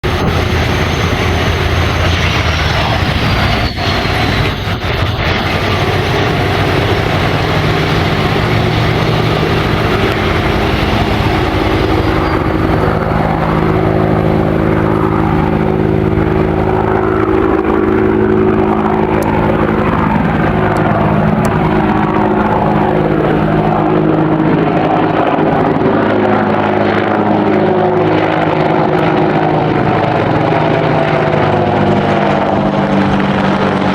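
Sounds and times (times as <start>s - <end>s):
airliner engines rushing: 0.0s - 33.9s
high engine whine: 0.0s - 33.9s.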